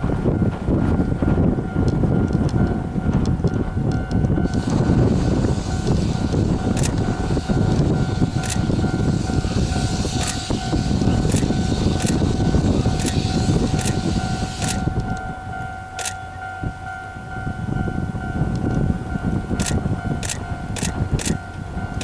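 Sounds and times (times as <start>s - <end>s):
steam locomotive rumble: 0.0s - 22.0s
steady high tone: 0.9s - 22.0s
sharp clicks: 6.8s - 7.0s, 10.2s - 10.4s, 11.3s - 12.2s, 13.0s - 13.2s, 14.6s - 15.2s, 16.0s - 16.2s, 19.6s - 21.4s.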